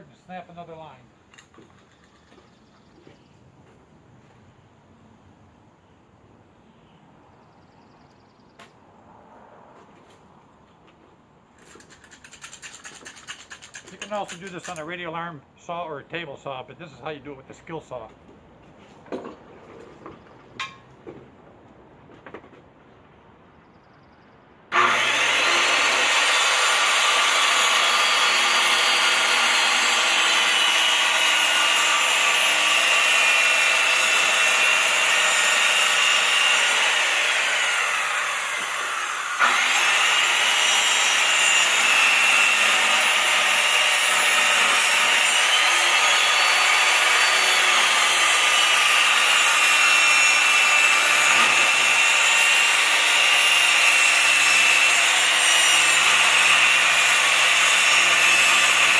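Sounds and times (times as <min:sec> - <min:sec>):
circular saw cutting wood: 0:11.8 - 0:15.1, 0:24.7 - 0:58.9.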